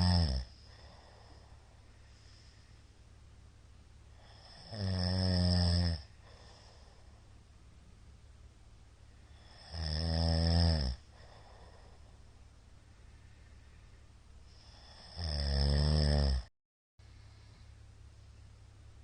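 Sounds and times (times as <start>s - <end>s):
man snoring loudly: 0.0s - 1.3s, 4.2s - 6.5s, 9.3s - 11.8s, 14.6s - 16.5s.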